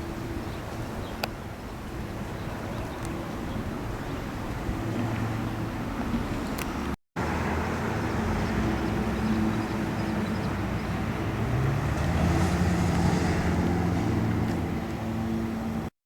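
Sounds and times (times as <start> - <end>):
road noise: 0.0 - 15.9
car engine hum: 4.1 - 15.9.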